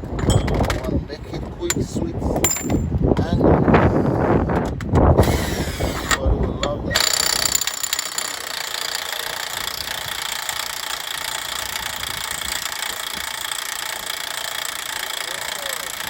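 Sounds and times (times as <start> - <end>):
machine droning with high whine: 7.0 - 16.0.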